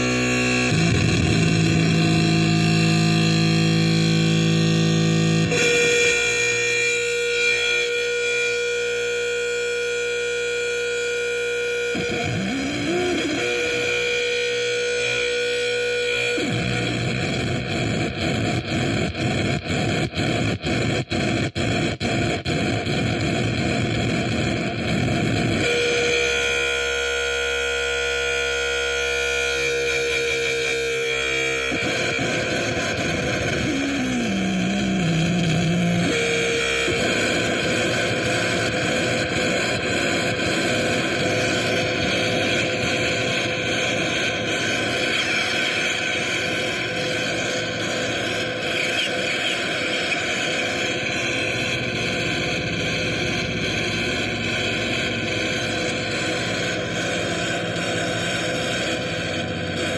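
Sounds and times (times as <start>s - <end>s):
distorted synthesizer drone: 0.0s - 59.9s
steady high tone: 0.6s - 9.4s.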